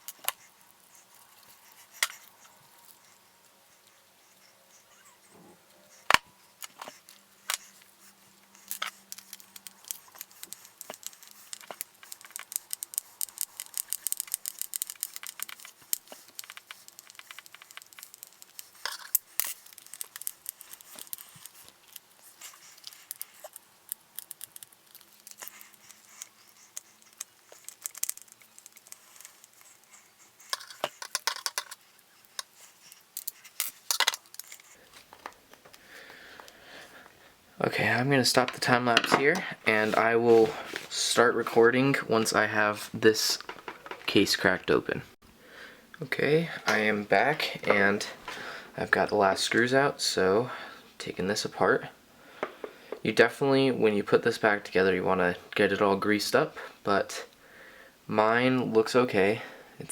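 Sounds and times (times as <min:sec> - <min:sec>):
wrenches and parts clicking: 0:08.7 - 0:22.0.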